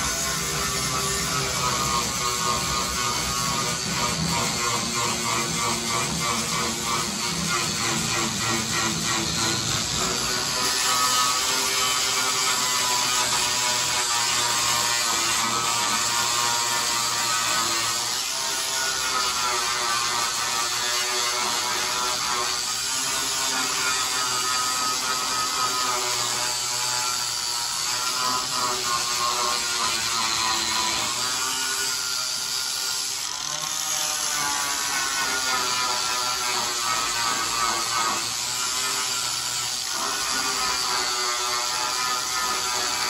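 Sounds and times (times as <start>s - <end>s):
angle grinder grinding metal: 0.0s - 43.0s.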